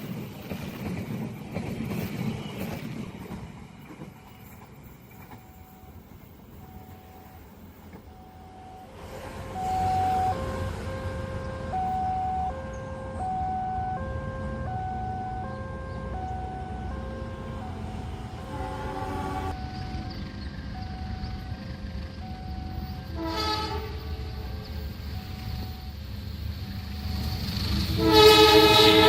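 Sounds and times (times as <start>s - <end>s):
level crossing two-tone alarm: 8.1s - 18.1s.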